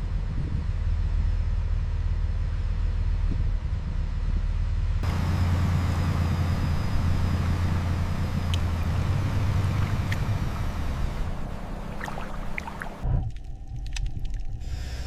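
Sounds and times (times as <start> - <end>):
low engine drone: 0.0 - 15.0.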